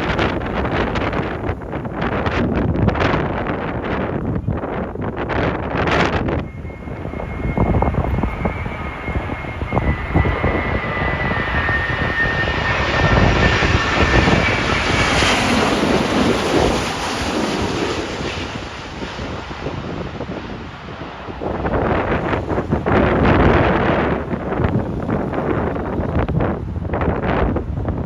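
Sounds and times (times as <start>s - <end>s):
jet engine whine overhead: 0.0s - 28.0s
wind buffeting microphone: 0.0s - 28.0s.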